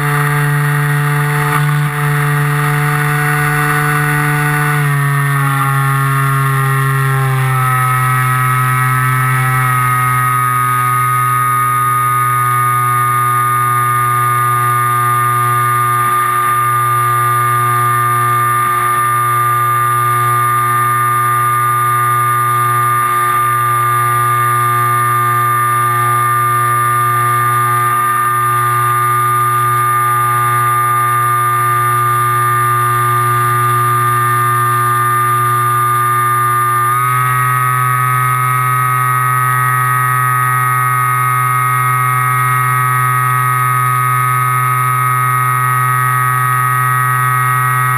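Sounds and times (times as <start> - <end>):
electric motor droning whine: 0.0 - 47.9.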